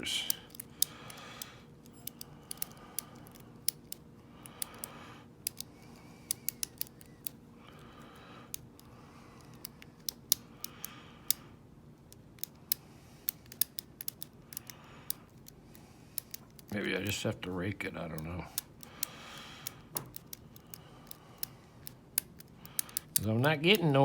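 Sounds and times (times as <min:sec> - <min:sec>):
lock pick clicking in lock: 0:00.3 - 0:05.7, 0:06.3 - 0:07.4, 0:12.1 - 0:15.6, 0:16.2 - 0:16.7, 0:18.2 - 0:23.8.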